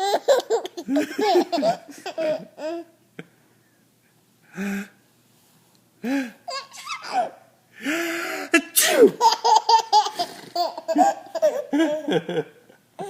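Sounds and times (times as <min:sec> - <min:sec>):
baby giggling: 0:00.0 - 0:03.0, 0:06.5 - 0:07.4, 0:08.6 - 0:12.4
fake sneeze: 0:08.6 - 0:09.2.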